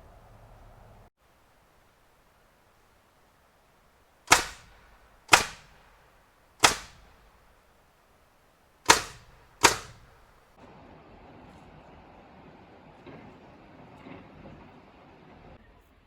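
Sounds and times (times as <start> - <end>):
nail gun firing: 4.3 - 7.6, 8.9 - 10.4.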